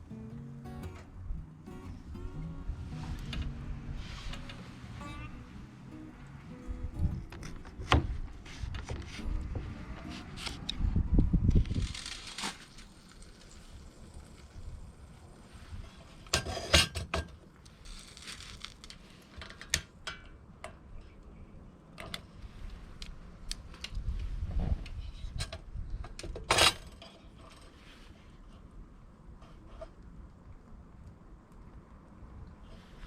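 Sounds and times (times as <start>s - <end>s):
low rumble: 1.1s - 12.0s.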